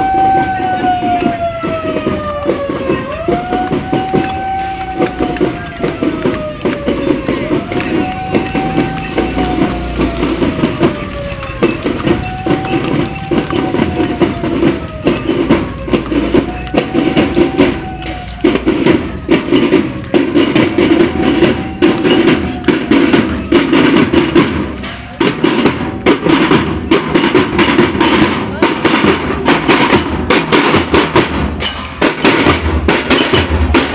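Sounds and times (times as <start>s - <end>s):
fast drumming: 0.0s - 33.9s
wailing parade music tone: 0.0s - 33.9s.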